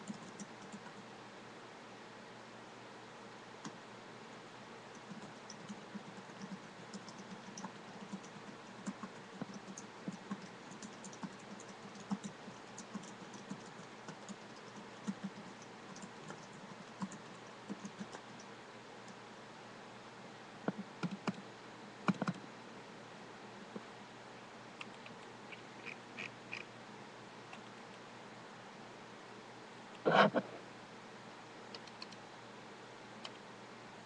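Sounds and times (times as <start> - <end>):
computer keyboard typing: 0.0 - 1.0, 4.9 - 19.2, 20.7 - 21.4, 22.1 - 22.4, 31.8 - 32.2
faint steady hiss: 0.0 - 34.0.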